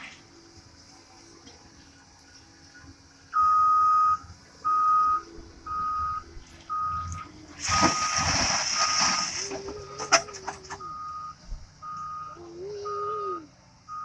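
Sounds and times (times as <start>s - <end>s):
backup alarm beeping: 3.3s - 14.0s
rushing hiss: 7.5s - 10.8s.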